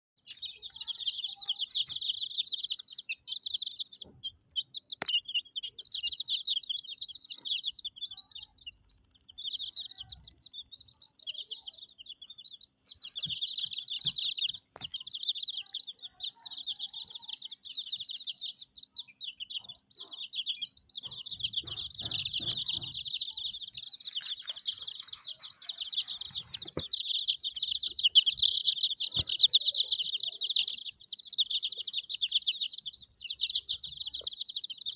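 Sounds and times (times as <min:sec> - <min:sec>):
chicks peeping: 0:00.2 - 0:34.9
sharp knocks: 0:21.4 - 0:23.5.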